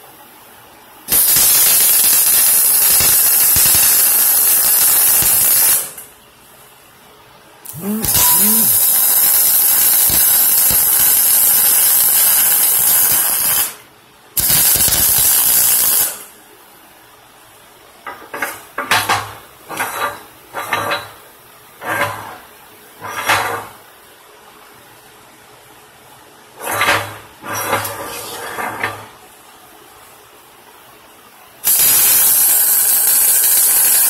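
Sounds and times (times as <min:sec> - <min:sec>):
sputtering welding bursts: 0:01.1 - 0:06.0, 0:07.6 - 0:13.8, 0:14.4 - 0:16.3, 0:31.6 - 0:34.0
welder hissing: 0:01.1 - 0:06.0, 0:07.6 - 0:13.8, 0:14.4 - 0:16.3, 0:31.6 - 0:34.0.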